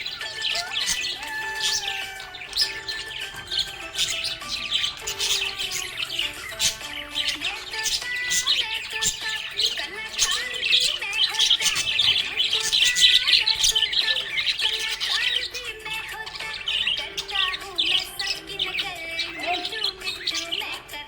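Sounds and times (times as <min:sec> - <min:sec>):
budgerigars chirping and warbling: 0:00.0 - 0:21.0.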